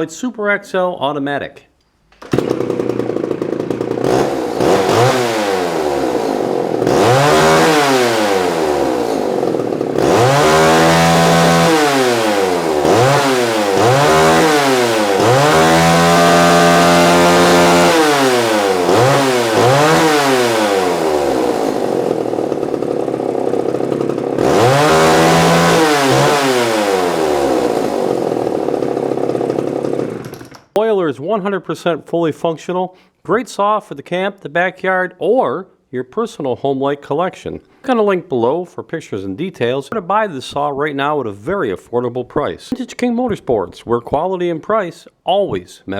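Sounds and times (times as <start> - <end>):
chainsaw revving: 2.2 - 30.8.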